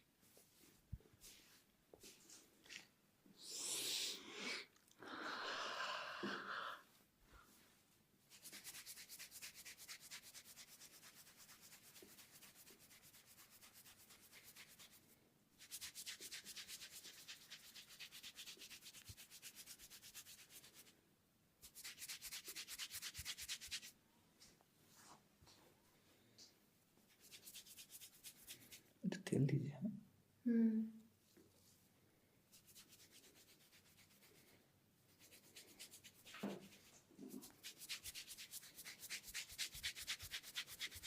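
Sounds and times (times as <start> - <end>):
hands rubbing hair: 8.3 - 20.9, 21.6 - 24.0, 27.1 - 28.9, 32.5 - 41.0.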